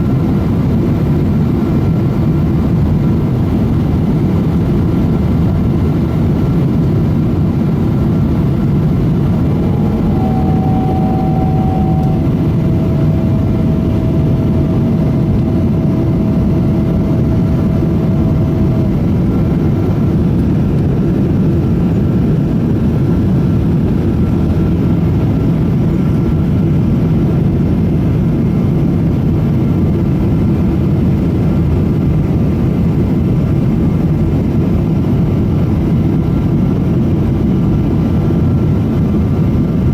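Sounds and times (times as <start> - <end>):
jet engine and airflow rumble: 0.0 - 39.9
faint steady tone: 8.4 - 13.9.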